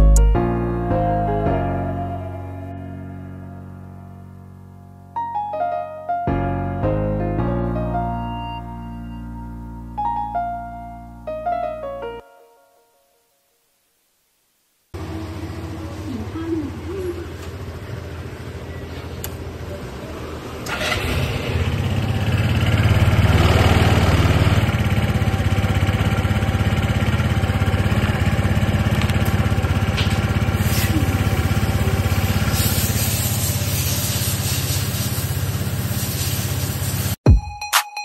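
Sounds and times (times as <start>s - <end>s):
motorcycle engine idling and revving: 15.0s - 37.2s.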